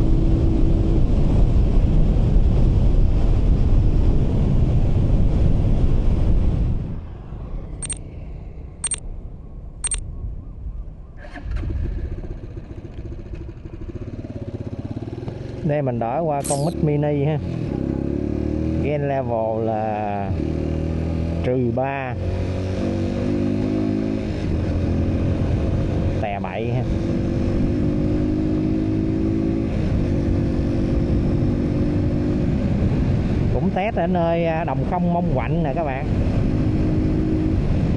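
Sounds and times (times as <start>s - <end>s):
wind rumble on microphone: 0.0s - 13.0s, 29.6s - 37.9s
motorcycle engine cruising: 11.4s - 18.9s, 26.9s - 33.6s, 36.0s - 37.9s
short high electronic beeps: 16.4s - 16.8s.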